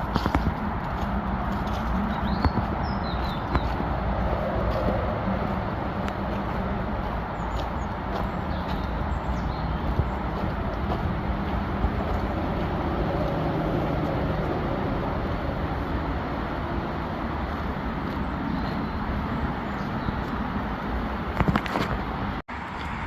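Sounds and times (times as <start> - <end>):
faint engine hum: 0.0 - 21.4
road traffic rumble: 0.0 - 23.0.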